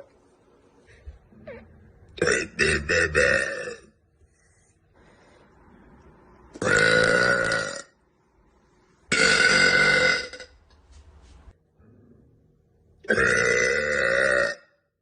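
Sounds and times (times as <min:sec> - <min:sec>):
woman burping loudly: 0:01.4 - 0:04.0, 0:06.6 - 0:08.0, 0:09.1 - 0:10.5, 0:13.0 - 0:14.8.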